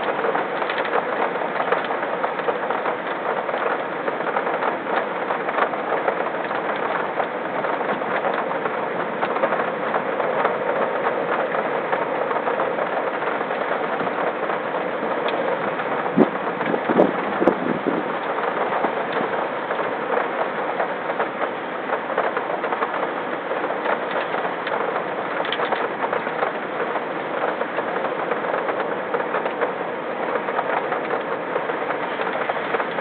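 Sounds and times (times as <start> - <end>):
steady rain falling: 0.0 - 33.0.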